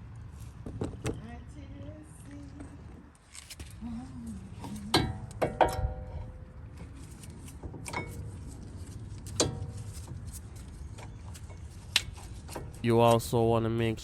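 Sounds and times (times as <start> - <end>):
metal brake parts clinking: 7.8 - 12.9.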